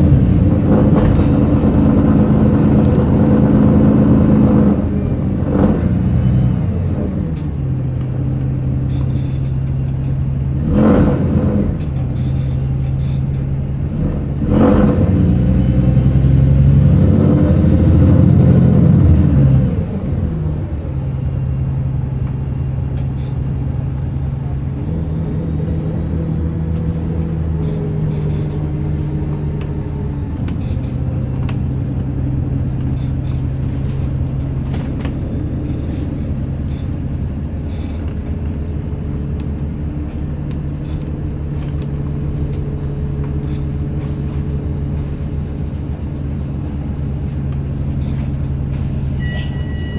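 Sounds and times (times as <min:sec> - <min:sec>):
bus engine drone: 0:00.0 - 0:49.9.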